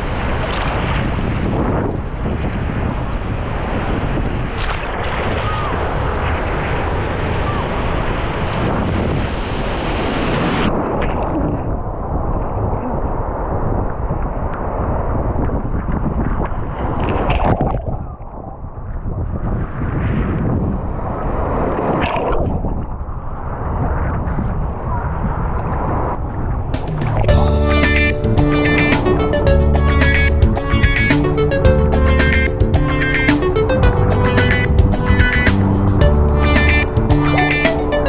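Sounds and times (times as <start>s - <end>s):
ocean surf: 26.8s - 38.0s.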